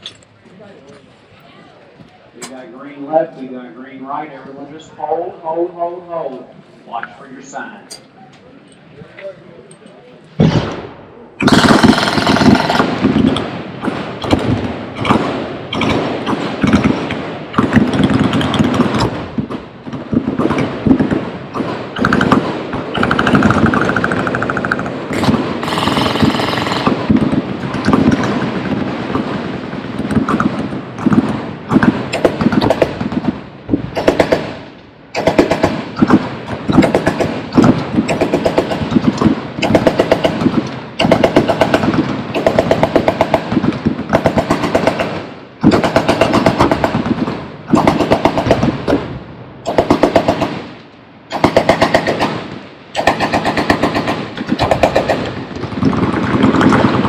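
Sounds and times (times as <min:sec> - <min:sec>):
machine gun automatic fire: 0:11.4 - 0:49.0, 0:49.7 - 0:57.0.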